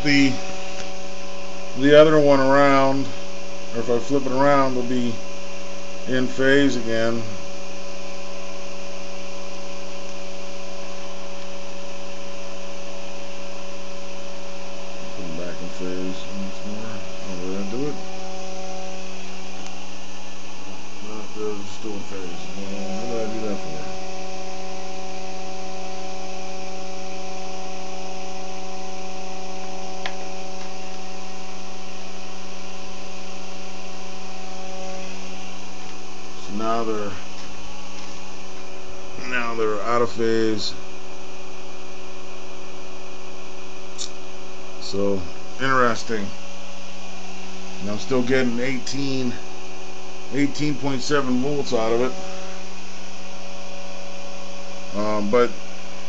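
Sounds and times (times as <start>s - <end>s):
pulse motor humming: 0.0s - 56.0s
sharp click: 44.0s - 44.2s.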